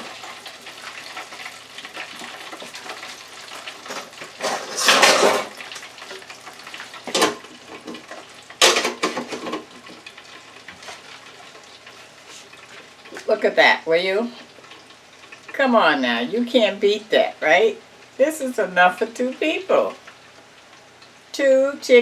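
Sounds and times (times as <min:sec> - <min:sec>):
faint steady hiss: 0:00.0 - 0:22.0
metal and dishware clattering: 0:03.8 - 0:06.2, 0:07.1 - 0:09.7.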